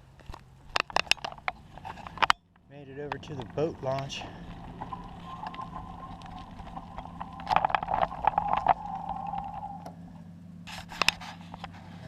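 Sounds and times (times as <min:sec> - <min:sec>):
bicycle rattling and clicking: 0:00.0 - 0:09.9
steady low hum: 0:00.0 - 0:12.0.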